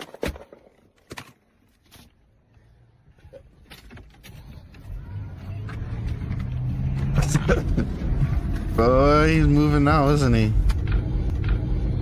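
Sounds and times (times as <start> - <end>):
car engine running: 4.5 - 12.0.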